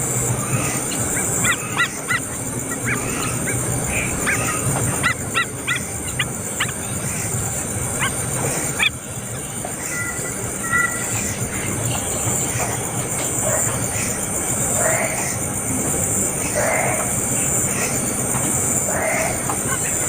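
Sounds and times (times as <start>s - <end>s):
birds harsh calls: 0.0s - 20.0s
steady background hiss: 0.0s - 20.0s.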